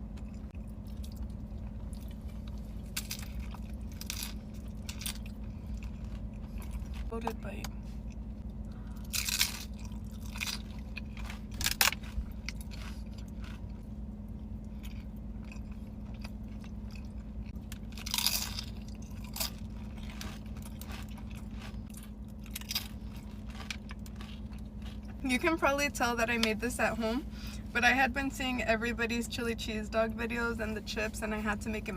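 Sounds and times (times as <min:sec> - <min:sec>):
chewing crunchy food: 0:00.0 - 0:07.1, 0:07.9 - 0:25.2.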